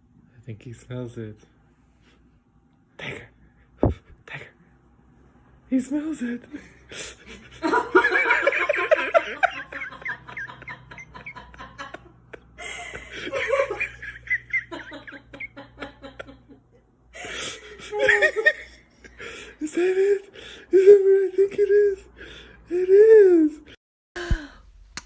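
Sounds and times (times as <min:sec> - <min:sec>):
hearty laughter: 0:06.6 - 0:22.2.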